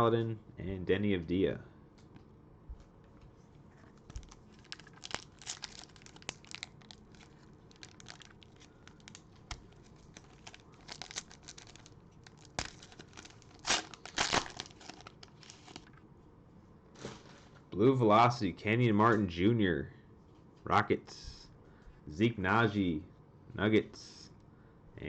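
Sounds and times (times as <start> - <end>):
cellophane wrapper crinkling: 3.9 - 16.0.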